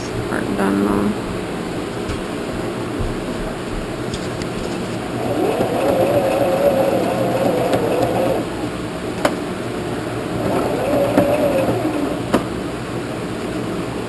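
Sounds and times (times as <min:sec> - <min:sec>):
sewing machine motor humming: 0:05.0 - 0:08.7, 0:10.2 - 0:12.5.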